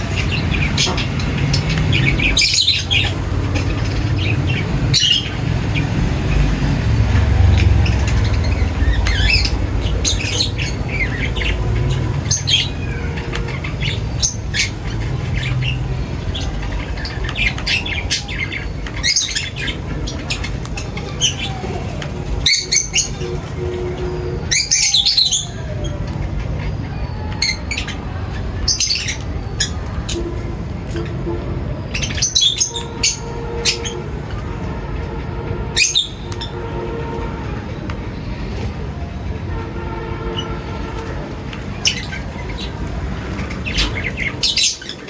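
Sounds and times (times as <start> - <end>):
birds chirping: 0.0 - 45.0.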